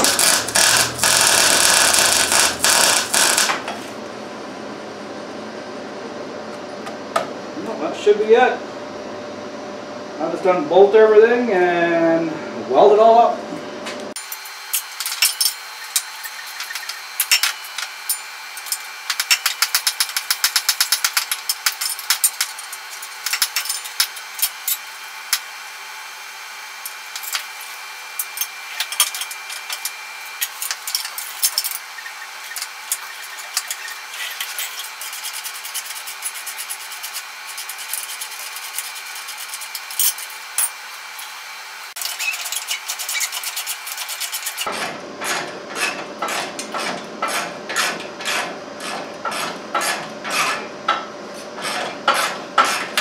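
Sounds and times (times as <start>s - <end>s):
tools scraping metal: 14.2s - 25.5s, 26.8s - 41.3s, 42.0s - 53.0s.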